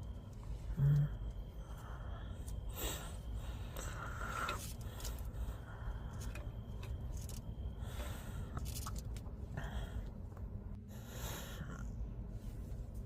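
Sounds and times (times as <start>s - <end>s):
hands scraping and rustling wiring: 0.0s - 9.6s
low steady rumble: 0.0s - 13.0s.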